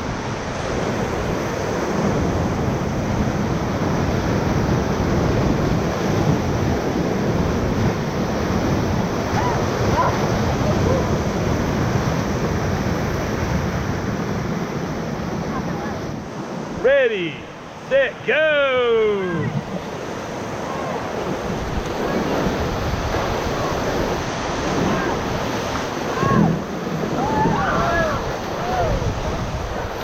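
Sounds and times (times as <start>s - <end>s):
wind on microphone: 0.0s - 16.3s, 19.2s - 30.0s
river rapids rushing: 4.8s - 30.0s.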